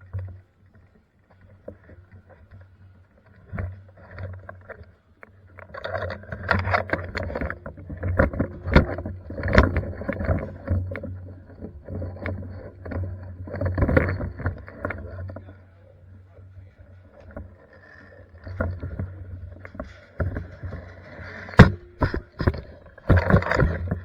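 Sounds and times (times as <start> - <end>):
steady low hum: 8.4 - 24.0
clicks knocks and rustling: 18.5 - 24.0.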